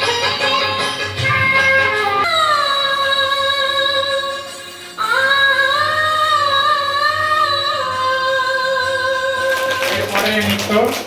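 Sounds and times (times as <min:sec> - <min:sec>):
music: 0:00.0 - 0:11.0.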